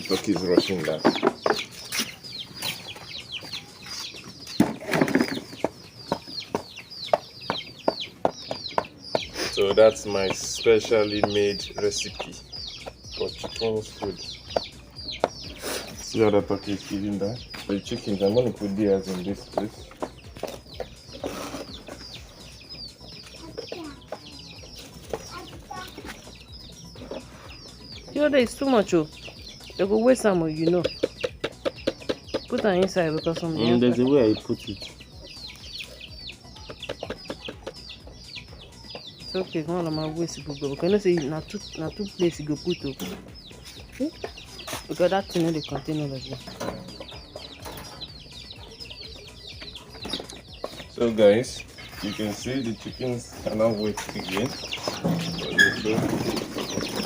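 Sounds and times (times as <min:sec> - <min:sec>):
chickens clucking: 0:00.0 - 0:57.0
chickens peeping: 0:00.0 - 0:57.0
low chicken clucks: 0:30.2 - 0:34.0, 0:35.2 - 0:39.1.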